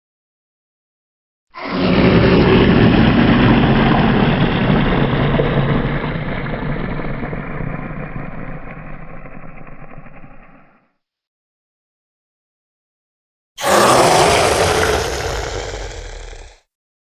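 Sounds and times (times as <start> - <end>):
low rasping monster growl: 1.6 - 6.8, 13.6 - 16.6.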